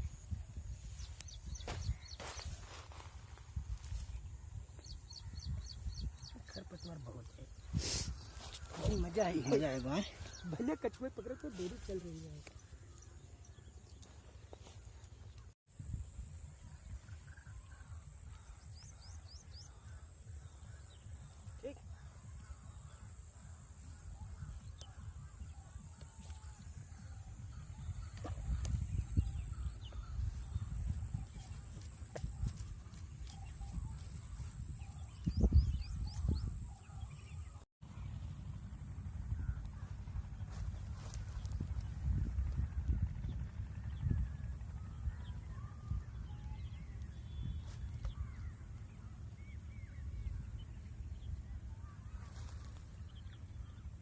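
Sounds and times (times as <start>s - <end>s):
low steady rumble: 14.8s - 54.0s.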